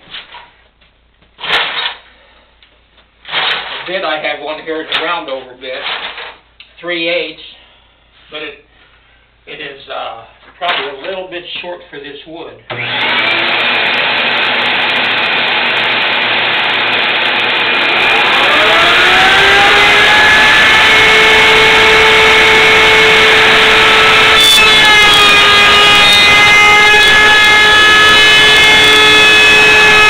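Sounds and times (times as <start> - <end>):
electric wood router whining: 12.7 - 30.0.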